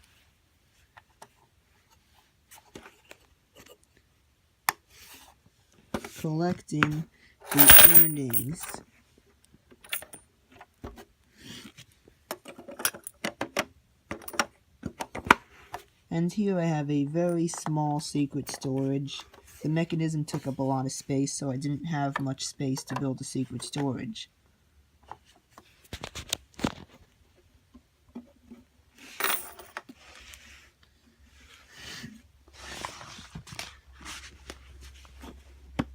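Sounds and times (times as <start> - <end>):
coins and plastic parts clacking: 7.5 - 8.8, 9.9 - 10.2, 29.2 - 29.7.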